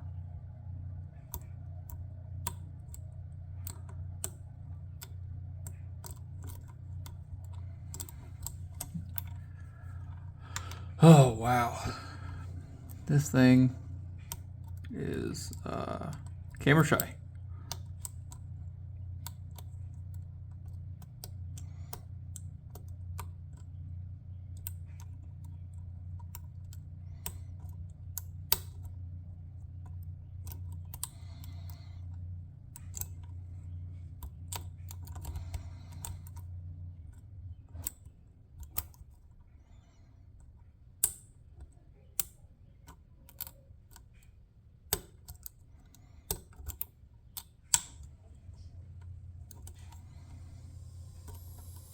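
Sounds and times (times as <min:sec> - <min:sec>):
low steady hum: 0:00.0 - 0:51.9
lock picks clicking in a padlock: 0:41.0 - 0:41.4, 0:42.1 - 0:44.3, 0:44.9 - 0:48.1.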